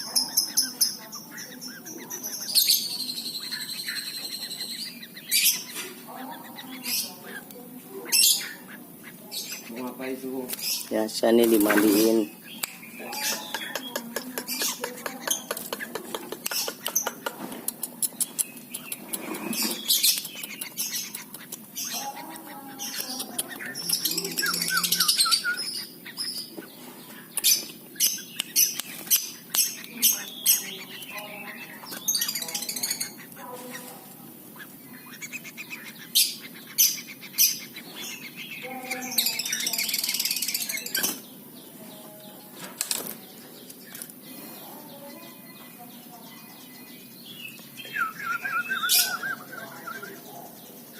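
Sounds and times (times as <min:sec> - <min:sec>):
bird chirping and squawking: 0:00.0 - 0:41.7, 0:43.8 - 0:50.9
sharp clicks: 0:12.5 - 0:19.3, 0:20.0 - 0:21.8.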